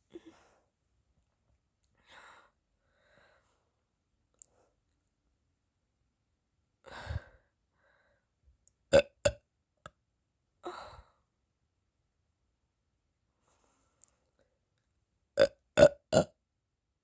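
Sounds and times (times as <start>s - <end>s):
person burping: 8.9s - 9.4s, 15.4s - 16.3s.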